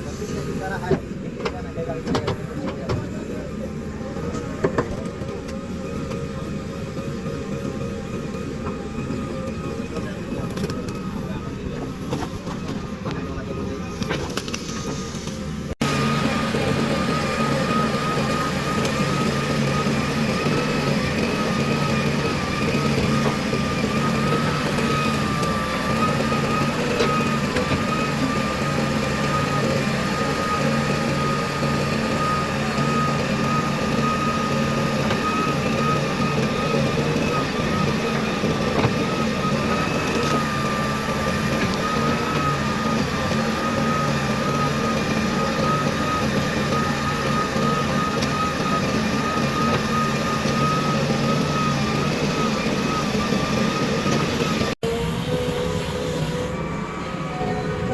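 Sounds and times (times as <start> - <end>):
heavy diesel machinery running: 0.0 - 57.9
high-pitched whine: 0.0 - 57.9.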